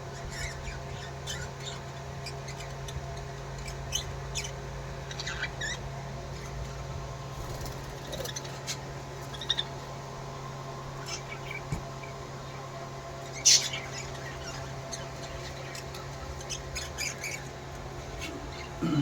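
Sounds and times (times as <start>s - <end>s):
steady low hum: 0.0s - 19.0s
parrots chirping and squeaking: 3.6s - 5.8s, 7.6s - 9.8s, 13.2s - 17.5s.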